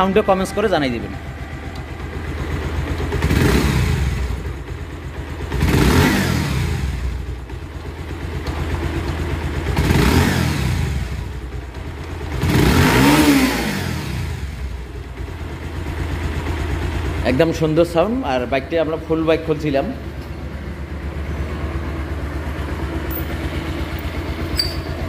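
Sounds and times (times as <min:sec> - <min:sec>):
motorcycle engine idling and revving: 0:00.0 - 0:25.0.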